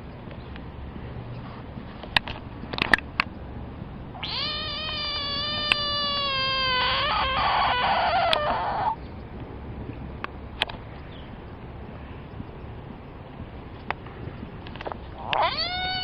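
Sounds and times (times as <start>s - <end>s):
sharp clicks: 4.2s - 6.0s
frog distress scream: 4.2s - 9.0s, 15.2s - 16.0s.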